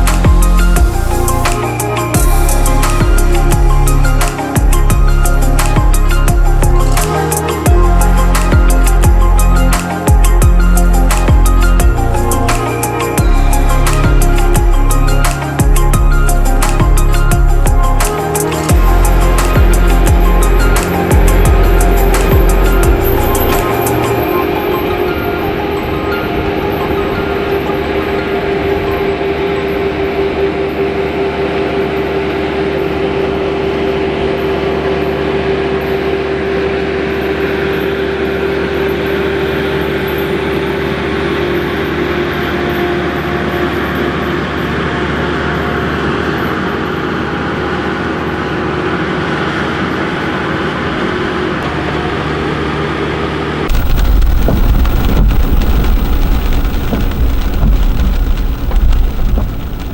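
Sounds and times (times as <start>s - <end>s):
engine running with whine: 53.7s - 59.9s
loud low rumble: 53.7s - 59.9s
steady rain: 53.7s - 59.9s.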